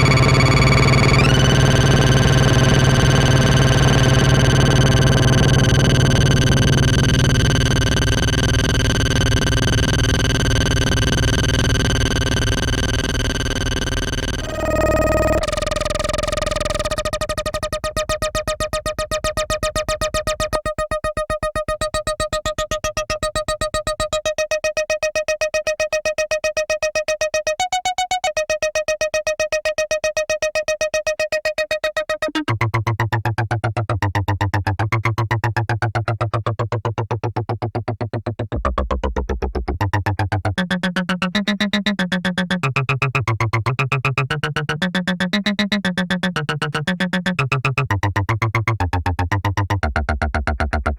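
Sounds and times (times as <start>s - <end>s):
synthesizer pulsing note: 0.0s - 18.1s
synth bass line with sweeping tones: 0.0s - 23.1s, 31.4s - 50.9s.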